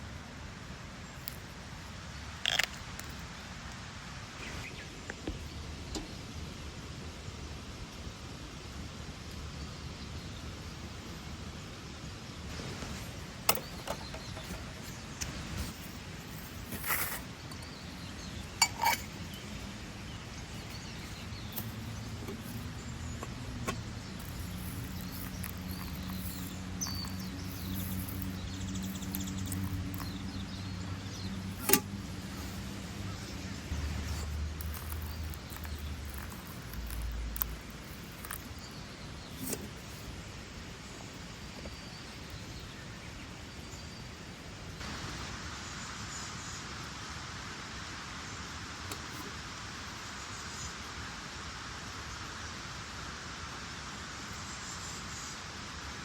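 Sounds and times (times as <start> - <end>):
sharp clicks and knocks: 31.5 - 32.0.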